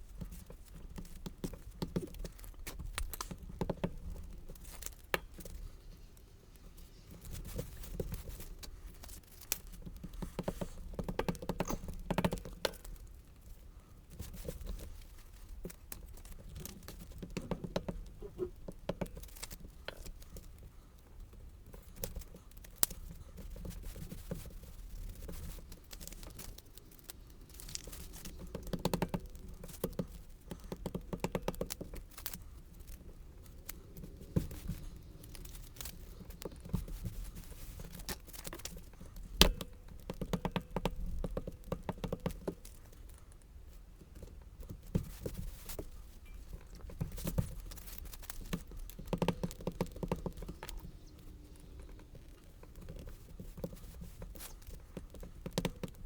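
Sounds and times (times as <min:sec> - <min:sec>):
light taps: 0:22.0 - 0:33.0, 0:44.2 - 0:56.0.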